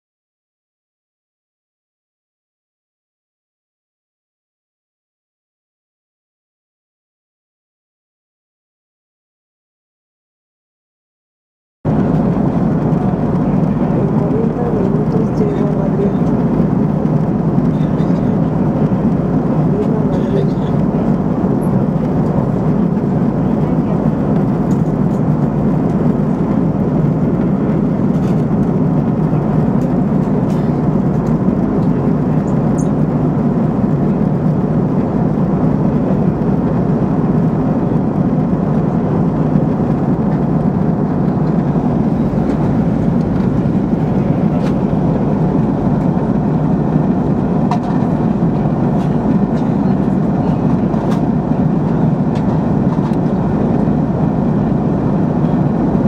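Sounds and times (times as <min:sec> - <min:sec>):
airliner engines droning: 0:11.9 - 0:56.0
rushing airflow: 0:11.9 - 0:56.0.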